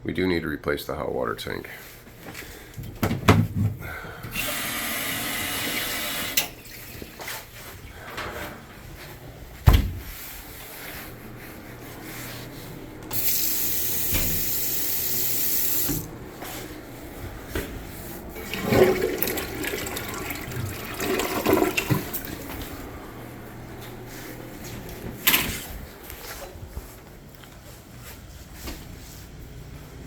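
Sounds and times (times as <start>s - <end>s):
water running from tap: 13.1s - 16.1s, 18.4s - 22.5s.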